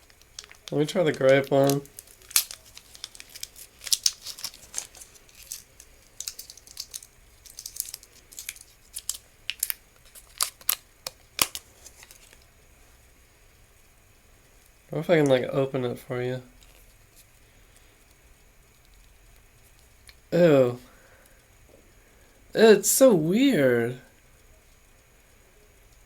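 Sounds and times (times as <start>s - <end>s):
plastic wrapper crinkling and tearing: 0.0s - 12.5s.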